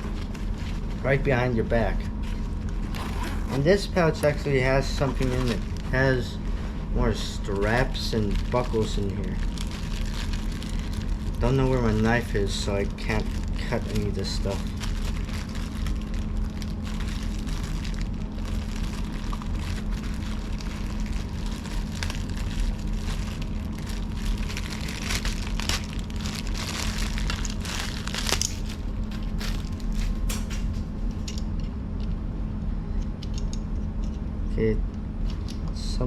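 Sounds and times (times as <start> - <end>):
plastic packaging crinkling: 0.0 - 31.2
steady low hum: 0.0 - 36.0.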